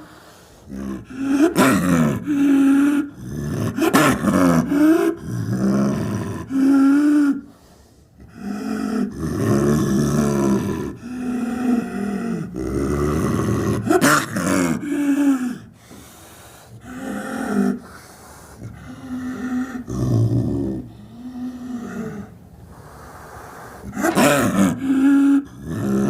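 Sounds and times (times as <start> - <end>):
big cat calls: 18.6 - 26.0.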